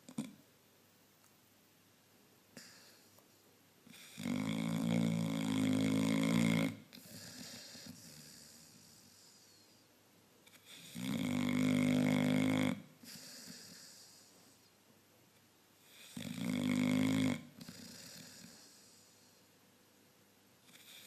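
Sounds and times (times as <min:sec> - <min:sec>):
dog snoring: 0:03.9 - 0:09.8, 0:10.5 - 0:14.7, 0:15.8 - 0:19.4, 0:20.6 - 0:21.0.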